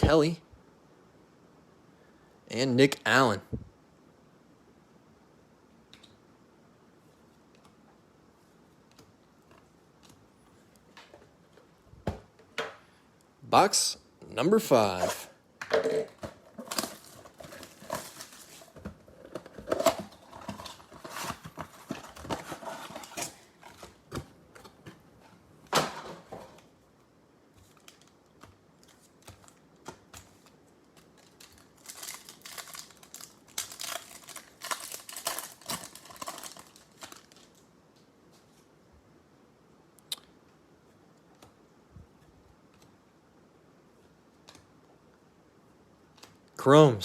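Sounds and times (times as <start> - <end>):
foil wrappers crinkling: 16.1 - 24.1, 27.6 - 37.7
packs tearing: 16.5 - 24.0, 31.0 - 37.6.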